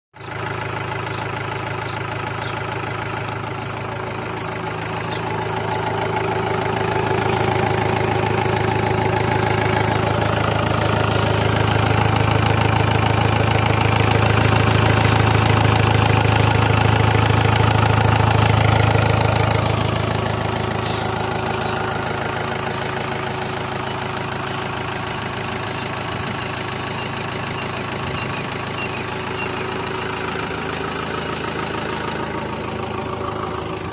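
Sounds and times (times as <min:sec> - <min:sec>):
diesel engine idling: 0:00.2 - 0:33.9.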